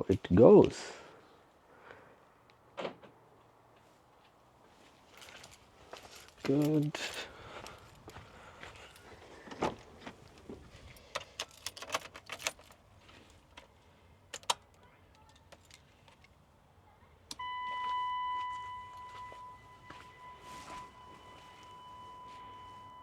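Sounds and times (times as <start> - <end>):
keys jangling: 5.1 - 8.0, 10.2 - 16.4
electronic warning tone: 17.4 - 23.0.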